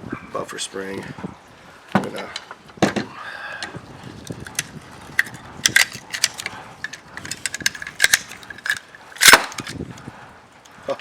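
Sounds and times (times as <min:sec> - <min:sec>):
metal clicks and clinks: 0:04.3 - 0:09.8.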